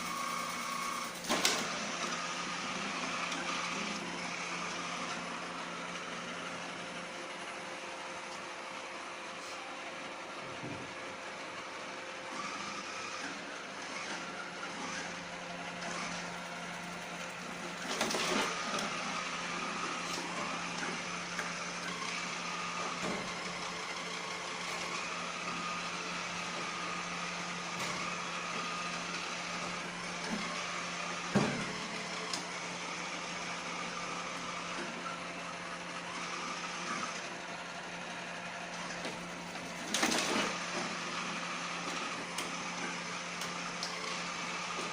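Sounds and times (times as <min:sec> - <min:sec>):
robot vacuum motor whirring: 0:00.0 - 0:07.6, 0:10.6 - 0:44.9.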